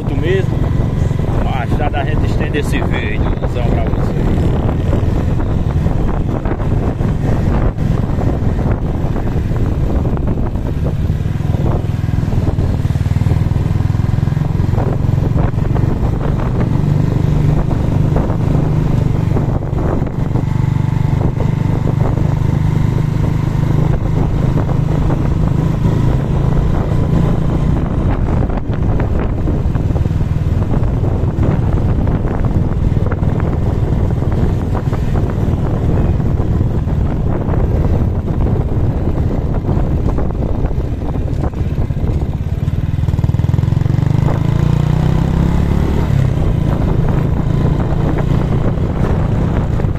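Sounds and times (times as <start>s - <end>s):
motorcycle engine running: 0.0s - 49.9s
wind rushing over microphone: 0.0s - 49.9s.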